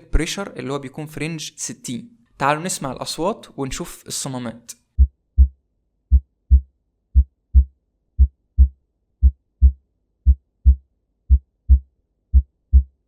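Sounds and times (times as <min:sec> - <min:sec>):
heartbeat lub-dub: 0:05.0 - 0:13.0.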